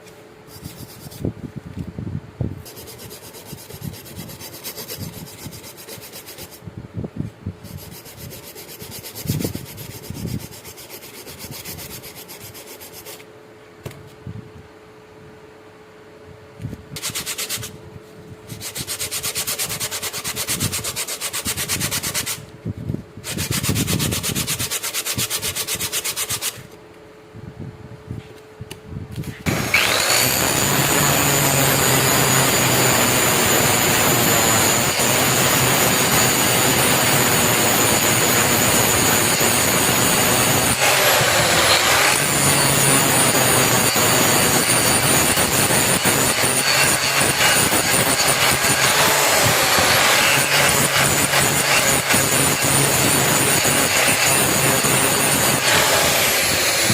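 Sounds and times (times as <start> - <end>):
power tool whining: 29.4 - 56.9.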